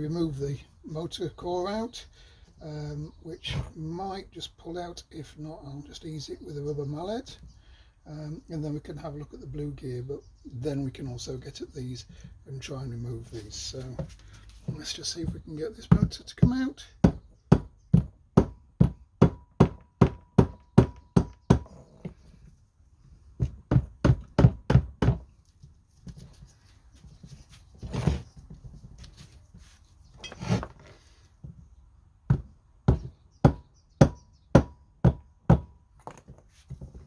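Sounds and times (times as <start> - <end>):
rubber mallet knocking on metal: 15.9 - 21.8, 23.4 - 25.3, 32.3 - 35.8.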